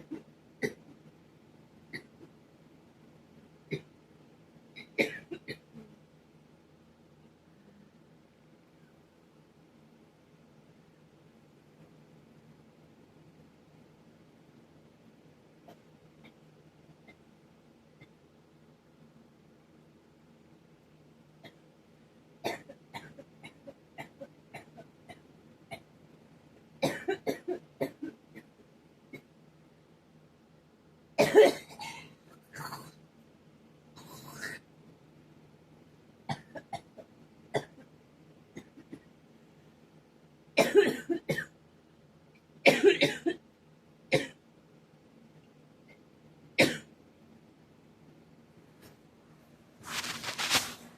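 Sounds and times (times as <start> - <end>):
person coughing: 4.8 - 5.8, 26.8 - 28.2, 31.2 - 32.9, 36.3 - 37.0, 40.6 - 41.5, 42.7 - 43.4, 46.6 - 46.9.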